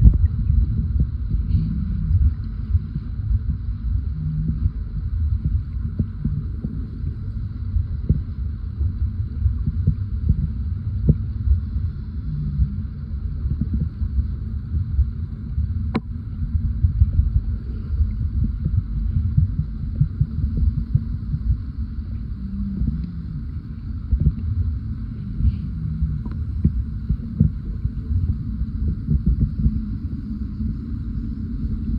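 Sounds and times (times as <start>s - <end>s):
soft underwater knocks and thumps: 0.0s - 3.7s
underwater rumble of moving water: 0.0s - 31.9s.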